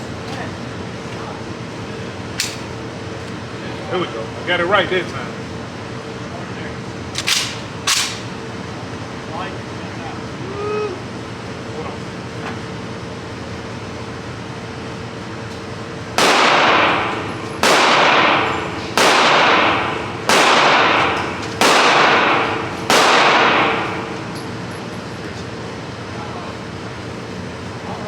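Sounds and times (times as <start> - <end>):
rifle shots: 16.2 - 24.3
ringing echo: 16.4 - 24.6.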